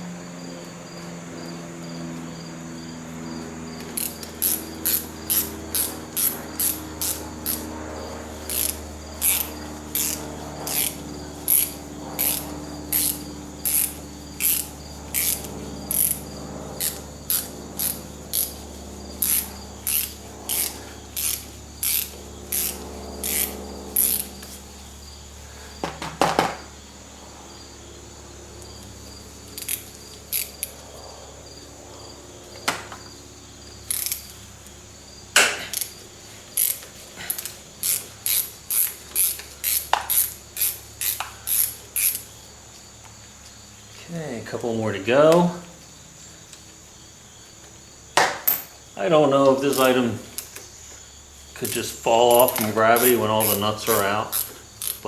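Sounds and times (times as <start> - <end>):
ratchet wrench clicking: 3.8 - 7.7, 8.4 - 18.6, 19.2 - 24.6, 29.5 - 30.8, 33.8 - 34.4, 35.7 - 42.3, 49.7 - 50.6, 51.8 - 55.0.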